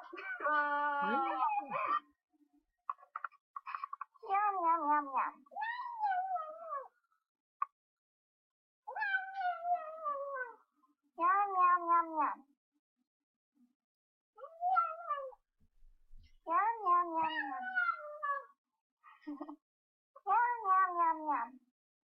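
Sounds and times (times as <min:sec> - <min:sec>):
cat meowing: 0:08.9 - 0:10.6, 0:14.5 - 0:15.3, 0:16.9 - 0:18.5.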